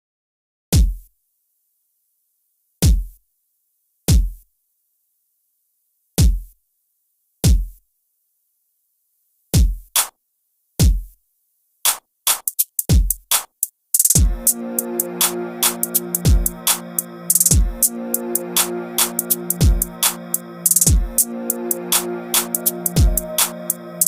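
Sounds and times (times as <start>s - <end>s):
electronic kick drum thumps: 0.8s - 1.0s, 2.8s - 3.2s, 4.1s - 4.4s, 6.2s - 6.5s, 7.4s - 7.8s, 9.6s - 9.9s, 10.8s - 11.1s, 12.9s - 13.3s, 14.1s - 15.6s, 16.2s - 24.0s.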